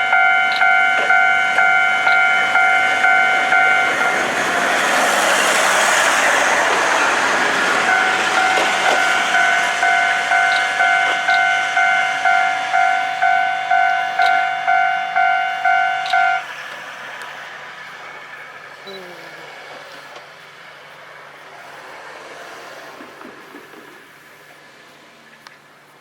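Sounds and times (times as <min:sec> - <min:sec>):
level-crossing alarm ringing: 0:00.0 - 0:16.5
diesel railcar rushing past: 0:00.0 - 0:26.0.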